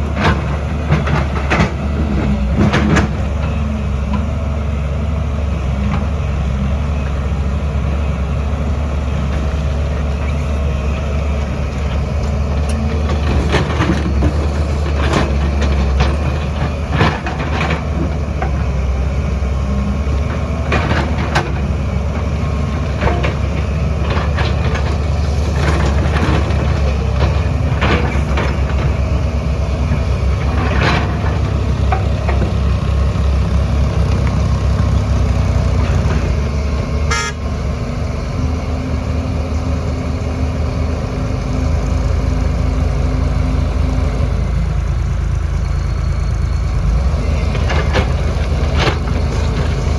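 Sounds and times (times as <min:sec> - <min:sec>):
diesel engine droning: 0:00.0 - 0:49.9.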